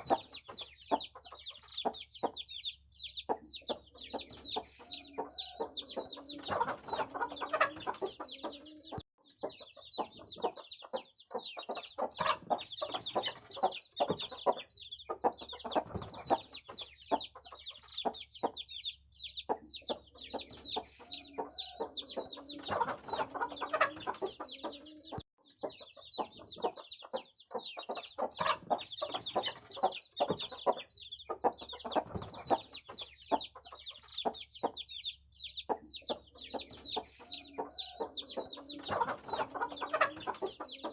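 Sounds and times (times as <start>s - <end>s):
chicks peeping: 0.0s - 40.9s
lower clucking calls: 3.3s - 9.0s, 19.5s - 25.6s, 35.6s - 40.9s.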